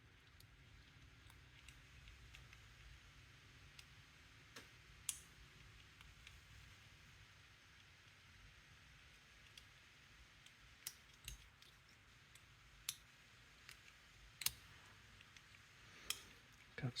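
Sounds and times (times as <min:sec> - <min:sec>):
metal clicks of lock picking: 0:13.7 - 0:14.6.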